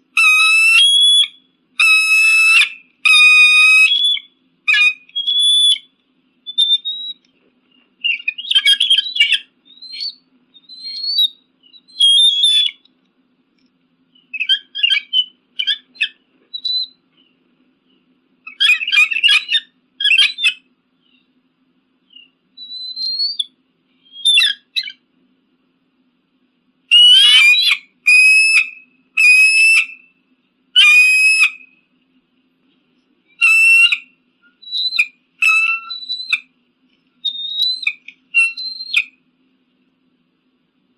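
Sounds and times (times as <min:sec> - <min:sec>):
eagle whistled chattering calls: 0:00.2 - 0:05.9, 0:06.5 - 0:07.3, 0:08.0 - 0:12.8, 0:14.2 - 0:17.0, 0:18.5 - 0:21.2, 0:22.1 - 0:25.0, 0:26.9 - 0:30.1, 0:30.8 - 0:31.8, 0:33.3 - 0:36.5, 0:37.2 - 0:39.2.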